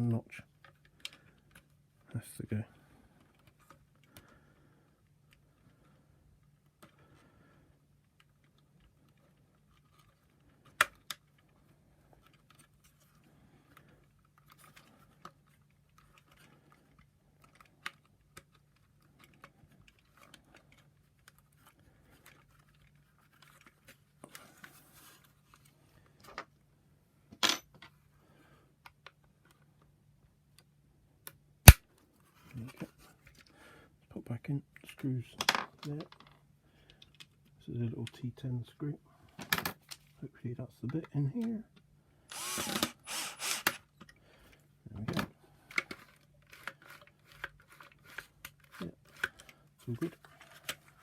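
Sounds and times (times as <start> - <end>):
plastic parts clicking into place: 45.0 - 51.0.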